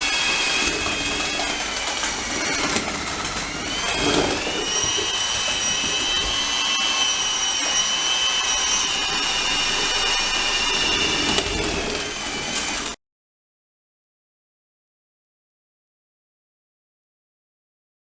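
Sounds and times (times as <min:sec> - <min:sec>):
mortar mixer motor whine: 0:00.0 - 0:13.0.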